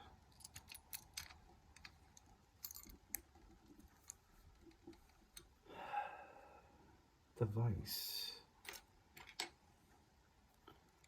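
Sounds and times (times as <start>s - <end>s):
metal lockpicking tools clicking: 0.3s - 4.2s.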